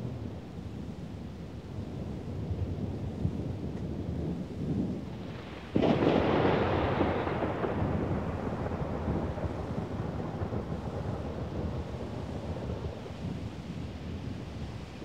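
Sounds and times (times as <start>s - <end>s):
low rumble of thunder: 0.0s - 15.0s
sharp thunderclap: 4.9s - 13.4s.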